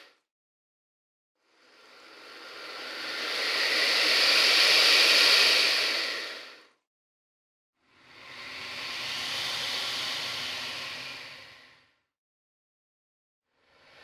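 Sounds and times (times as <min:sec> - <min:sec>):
alligator hissing: 0:01.6 - 0:06.6.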